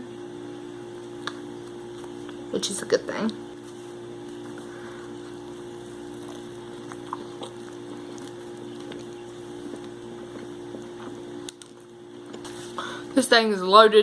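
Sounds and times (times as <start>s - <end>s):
low electrical hum: 0.0s - 14.0s
person chewing: 4.2s - 12.6s.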